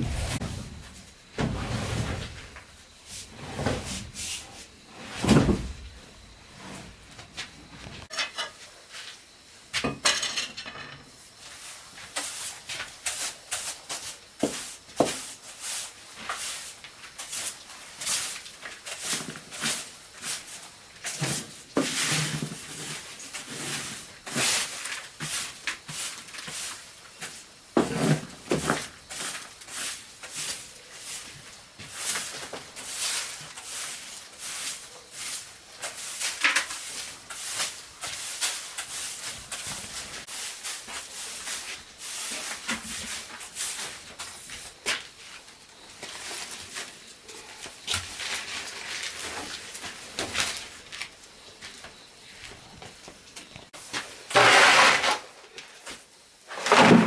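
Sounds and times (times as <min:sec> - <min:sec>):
heavy thuds: 0:00.0 - 0:02.5.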